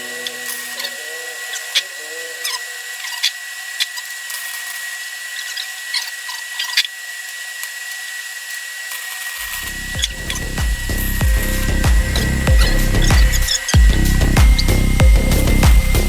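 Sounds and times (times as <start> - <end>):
power tool whining: 0.0 - 16.0
music with heavy beat: 10.0 - 16.0.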